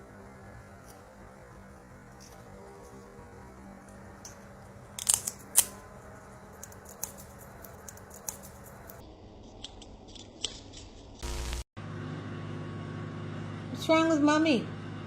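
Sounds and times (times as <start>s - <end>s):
low steady hum: 11.2s - 15.0s.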